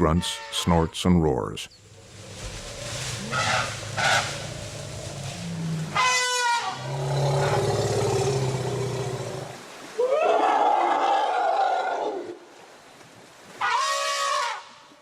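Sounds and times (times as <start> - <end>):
elephant rumbling growl: 1.8 - 9.6
elephant trumpeting: 2.7 - 9.5.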